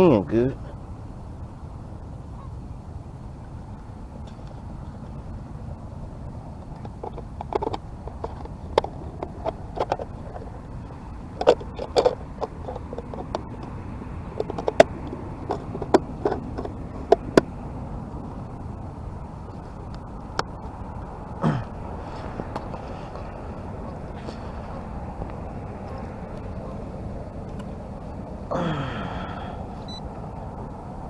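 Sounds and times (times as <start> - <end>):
steady background hiss: 0.0 - 31.0
clicks of handling plastic: 6.6 - 10.6, 11.3 - 13.7, 14.4 - 17.5.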